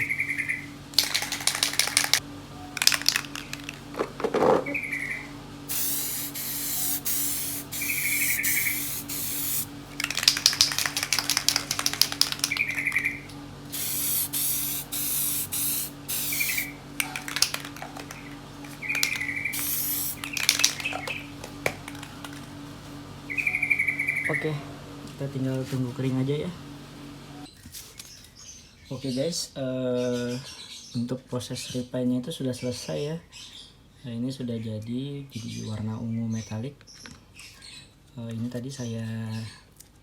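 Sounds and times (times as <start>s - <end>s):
aerosol spray can hissing: 1.0s - 2.2s, 5.7s - 12.9s, 13.7s - 17.8s, 18.9s - 21.0s
bird chirps: 4.6s - 5.3s, 7.8s - 9.4s, 12.4s - 13.3s, 23.3s - 24.5s.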